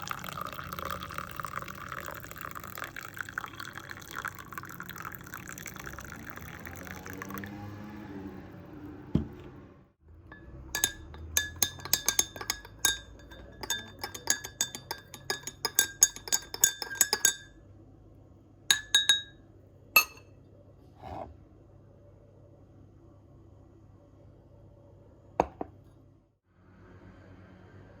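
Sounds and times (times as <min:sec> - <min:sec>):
spoon clinking in a glass: 0:00.1 - 0:07.2, 0:10.3 - 0:17.6, 0:18.7 - 0:19.4, 0:20.0 - 0:20.3.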